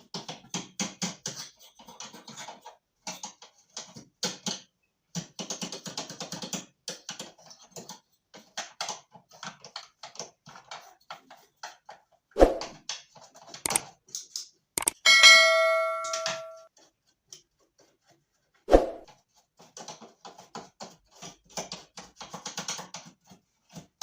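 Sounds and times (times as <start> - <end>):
tools clicking and scraping: 13.7 - 16.7.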